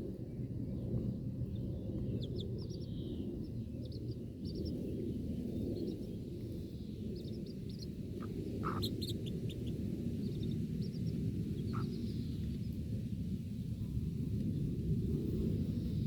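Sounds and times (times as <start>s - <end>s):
steady low rumble: 0.0s - 16.0s
baby chicks peeping: 1.4s - 12.7s
lower bird calls: 7.2s - 12.5s.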